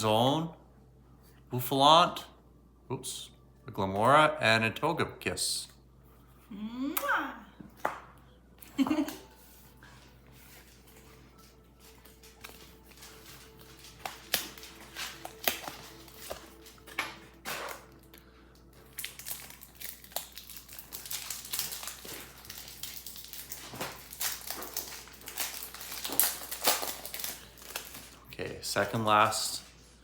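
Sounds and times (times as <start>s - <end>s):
plastic and foil crinkling: 9.6s - 29.8s.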